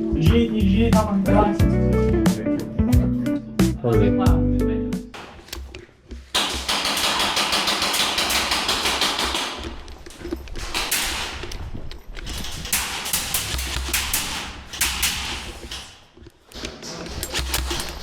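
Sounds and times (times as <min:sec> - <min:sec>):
replica guns firing in bursts: 0:06.4 - 0:09.9, 0:10.6 - 0:11.7, 0:12.3 - 0:16.2.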